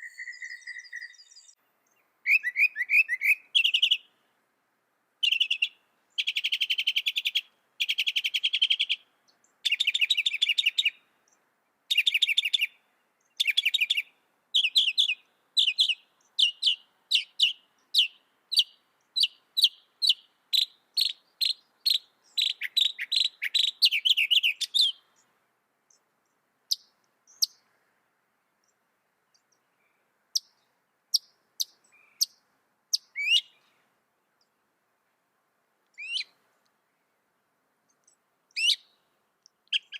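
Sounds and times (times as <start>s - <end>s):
mockingbird singing: 0.0s - 1.6s, 2.2s - 4.1s, 9.6s - 25.2s, 30.4s - 33.6s, 36.0s - 36.3s, 38.5s - 38.9s, 39.7s - 39.9s.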